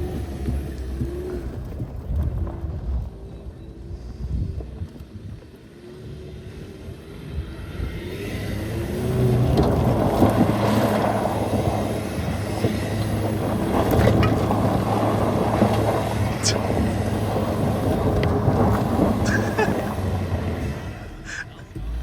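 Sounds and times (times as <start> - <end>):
wind noise: 0.0 - 21.8
car engine pulling: 0.0 - 22.0
gravel ticking: 0.0 - 22.0
tyre noise: 9.0 - 22.0.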